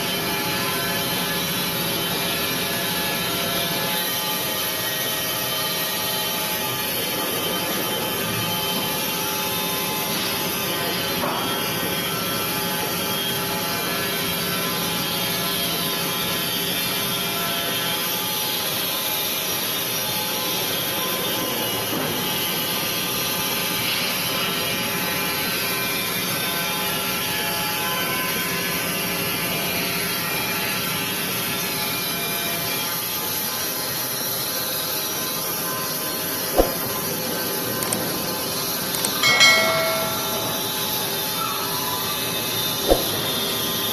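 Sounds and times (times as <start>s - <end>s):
sharp knock: 39.2s - 40.8s.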